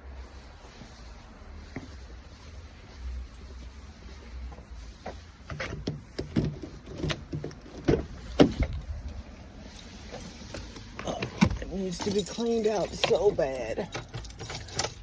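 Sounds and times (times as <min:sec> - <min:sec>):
person climbing into cab: 0:05.4 - 0:09.2, 0:09.8 - 0:15.0
truck door opening: 0:05.5 - 0:08.9, 0:10.2 - 0:15.0.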